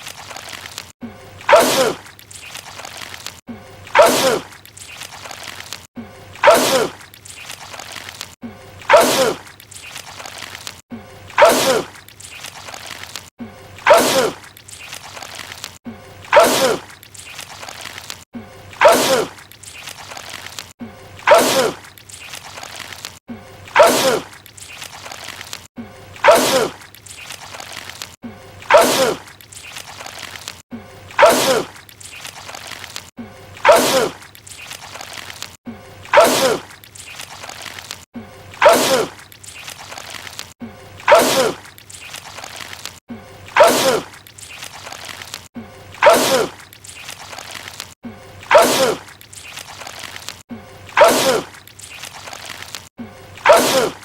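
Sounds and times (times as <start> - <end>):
man sneezing loudly: 43.6 - 44.1, 51.0 - 51.5, 53.4 - 54.0.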